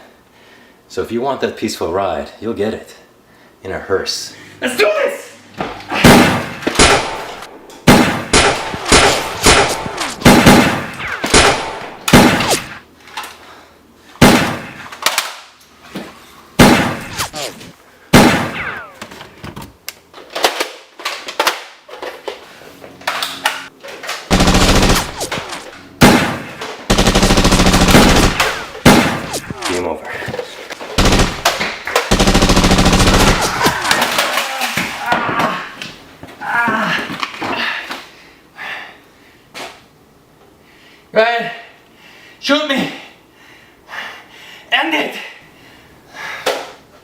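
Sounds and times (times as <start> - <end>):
gunshots: 6.0 - 12.8, 14.2 - 14.9, 16.6 - 19.0, 24.3 - 29.8, 31.0 - 33.8
rapid automatic gunfire: 24.3 - 29.5, 31.0 - 33.7.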